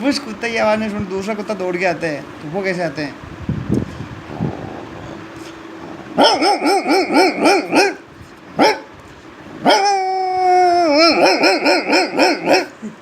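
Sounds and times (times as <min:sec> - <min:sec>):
man imitating dog barks: 0:06.1 - 0:08.9, 0:09.6 - 0:13.0
man imitating dog howl: 0:09.6 - 0:12.8.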